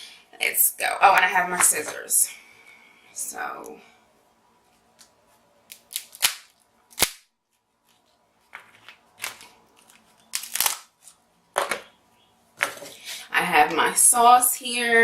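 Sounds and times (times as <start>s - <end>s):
crab shells cracking: 5.7s - 7.3s, 8.5s - 11.0s.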